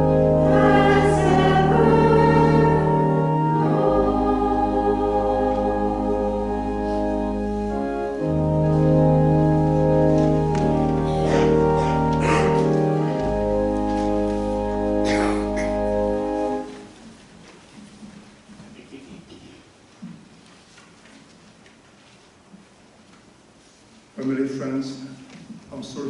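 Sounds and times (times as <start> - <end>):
church organ playing a hymn: 0.0 - 17.0.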